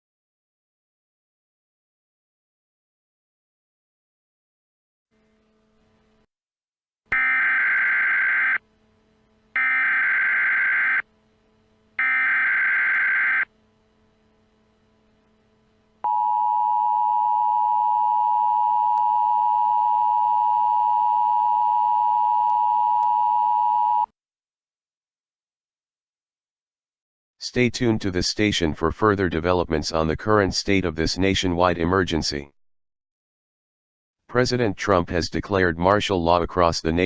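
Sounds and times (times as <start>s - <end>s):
harsh dual tone alert signal: 7.1s - 8.8s, 9.6s - 13.6s, 16.0s - 24.1s
digital header tone bursts: 9.6s - 11.1s.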